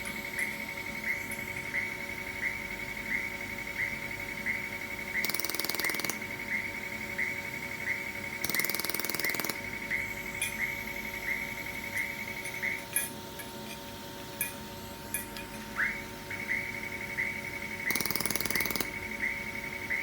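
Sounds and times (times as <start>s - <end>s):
machine hum: 0.0s - 20.0s
laser welder rapid pulses: 5.2s - 6.4s, 8.4s - 10.2s, 17.8s - 19.0s.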